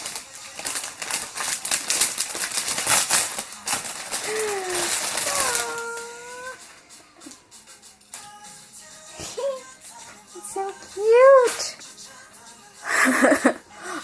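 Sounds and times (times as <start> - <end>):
plastic packaging crinkling: 0.0 - 6.7
person saying ooh: 4.2 - 6.6.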